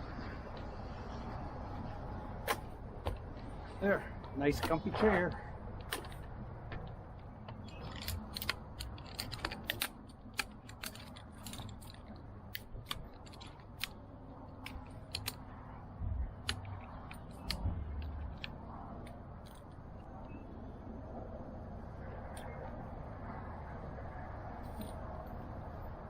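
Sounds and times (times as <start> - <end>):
camping gear clicks and taps: 0.5 - 15.5, 16.4 - 20.4.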